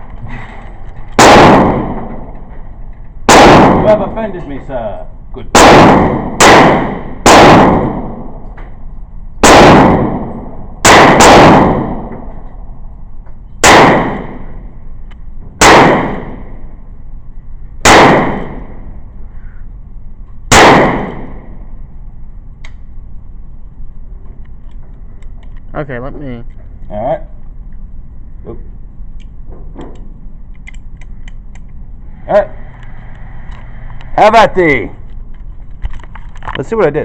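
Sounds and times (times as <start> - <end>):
gunshots: 1.2 - 2.3, 3.2 - 4.2, 5.5 - 8.3, 9.4 - 12.3, 13.6 - 14.6, 15.6 - 16.6, 17.8 - 18.9, 20.5 - 21.6.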